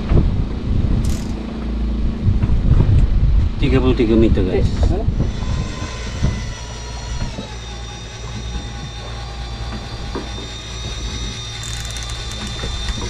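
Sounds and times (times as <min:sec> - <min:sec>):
boat engine humming: 0:04.7 - 0:13.0.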